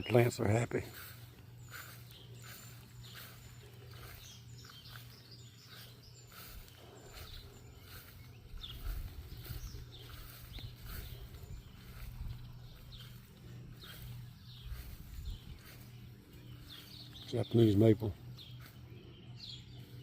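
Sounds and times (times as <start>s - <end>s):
birds chirping: 0.0s - 20.0s
steady low hum: 0.0s - 20.0s.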